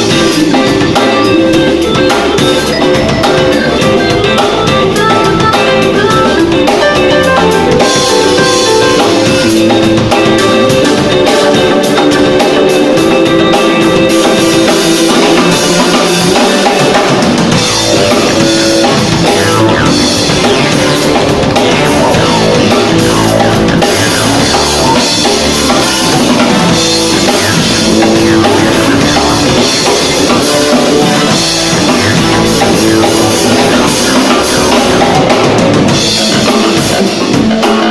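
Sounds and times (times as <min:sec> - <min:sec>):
live rock band playing: 0:00.0 - 0:37.9.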